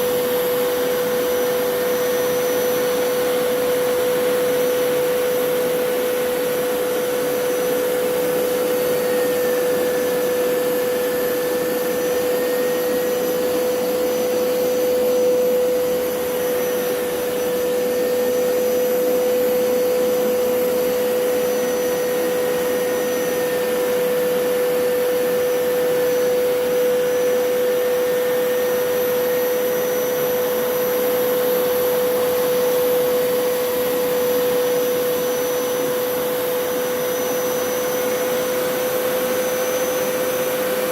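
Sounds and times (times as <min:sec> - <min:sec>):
carpet cleaner motor running: 0:00.0 - 0:40.9.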